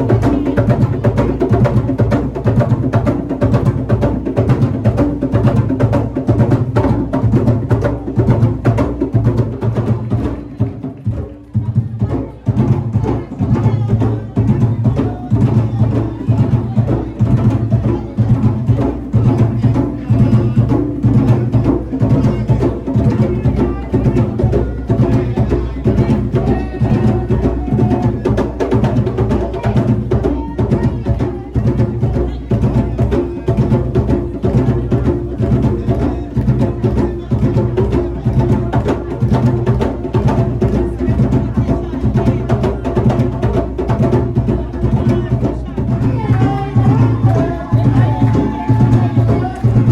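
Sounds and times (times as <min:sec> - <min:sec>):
drums and percussion beat: 0:00.0 - 0:49.9.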